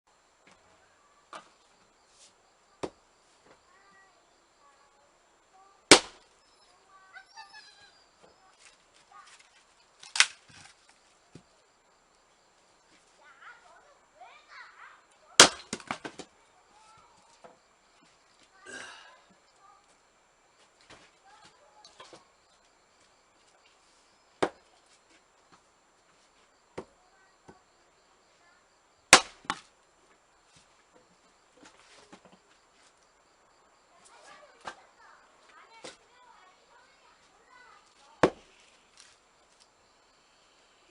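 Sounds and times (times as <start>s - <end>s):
axe splitting firewood: 5.9s - 6.2s, 9.2s - 11.4s, 15.4s - 16.3s, 24.4s - 24.7s, 29.1s - 29.7s, 38.0s - 39.2s
axe striking wood: 5.9s - 6.2s, 15.4s - 16.2s, 24.4s - 24.6s, 29.1s - 29.7s, 38.2s - 38.5s.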